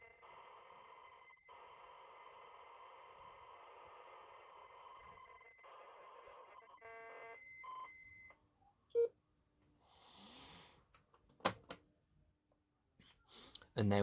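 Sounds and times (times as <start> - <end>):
cassette data tones: 0.0 - 9.1.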